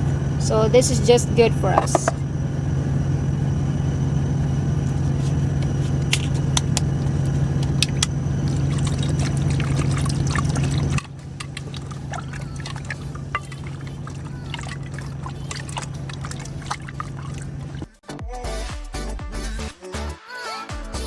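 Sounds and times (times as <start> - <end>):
truck engine idling: 0.0 - 18.0.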